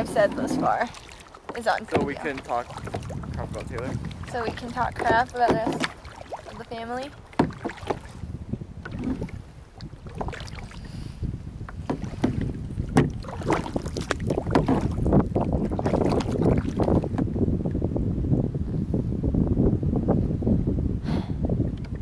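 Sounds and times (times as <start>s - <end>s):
paddle strokes splashing in water: 0.0s - 17.3s
wind buffeting microphone: 0.0s - 22.0s.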